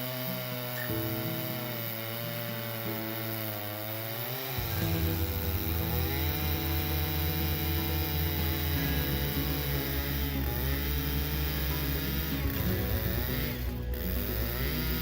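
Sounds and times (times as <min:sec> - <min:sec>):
chainsaw cutting wood: 0:00.0 - 0:15.0
background music with low bass: 0:04.6 - 0:15.0.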